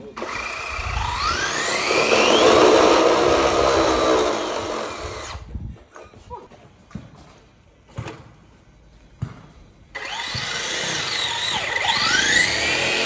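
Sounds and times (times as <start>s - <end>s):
electric motor whine: 0.2s - 5.5s, 10.0s - 13.0s.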